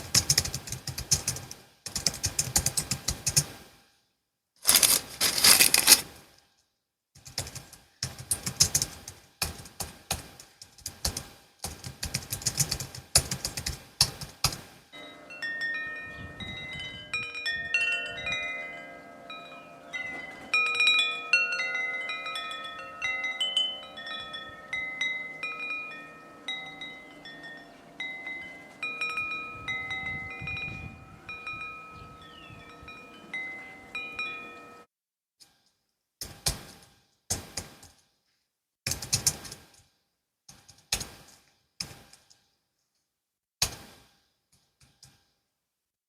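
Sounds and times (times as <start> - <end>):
wind chimes ringing: 15.0 - 34.9.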